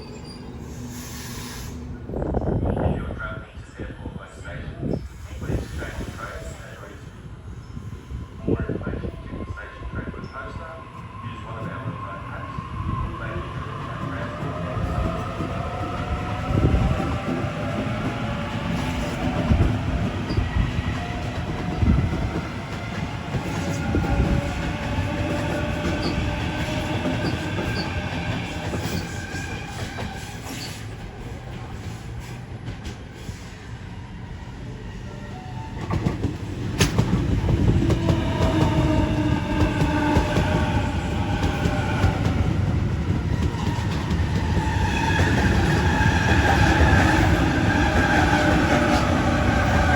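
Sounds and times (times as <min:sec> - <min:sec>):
rail clatter: 0:35.7 - 0:49.9.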